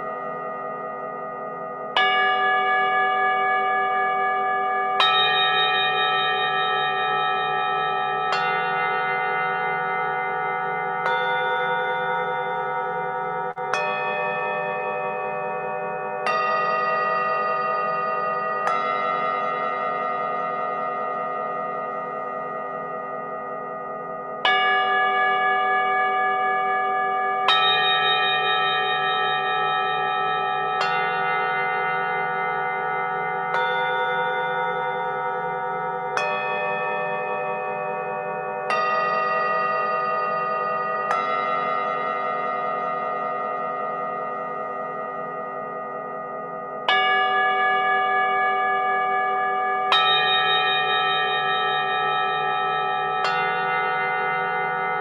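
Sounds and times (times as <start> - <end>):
singing bowls ringing: 0.0 - 55.0
singing bowl struck: 27.4 - 47.7.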